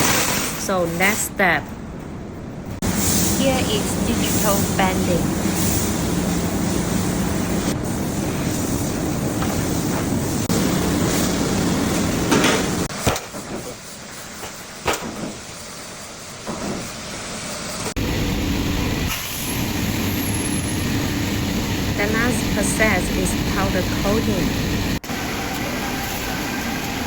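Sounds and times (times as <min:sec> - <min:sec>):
press brake machine hum: 0:17.7 - 0:27.0.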